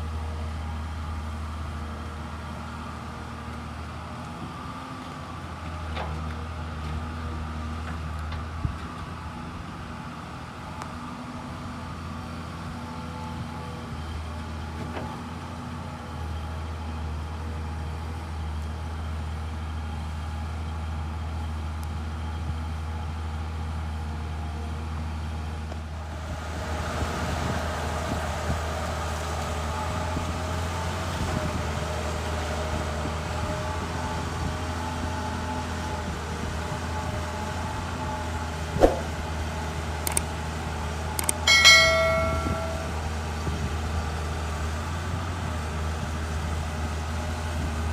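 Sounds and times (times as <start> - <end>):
excavator diesel engine droning: 25.9 - 47.9.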